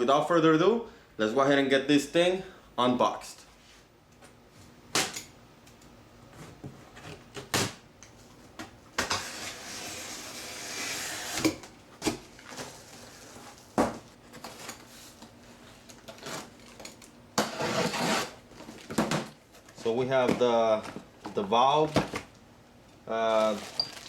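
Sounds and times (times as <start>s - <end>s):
cardboard being pulled open: 17.5s - 18.4s
rough rustling and scraping: 23.3s - 24.0s.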